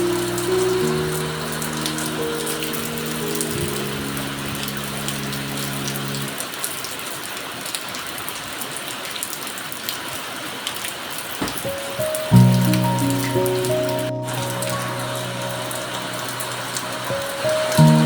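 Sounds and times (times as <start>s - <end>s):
soft held music chord: 0.0s - 6.4s, 12.1s - 18.0s
raindrops ticking: 0.0s - 6.9s, 10.8s - 18.0s
steady rain: 0.0s - 18.0s.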